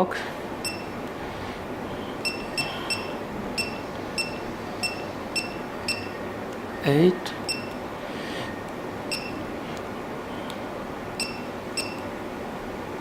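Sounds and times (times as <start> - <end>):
short high electronic beeps: 0.6 - 1.0, 2.2 - 6.2, 7.5 - 7.8, 9.1 - 9.4, 11.2 - 12.1.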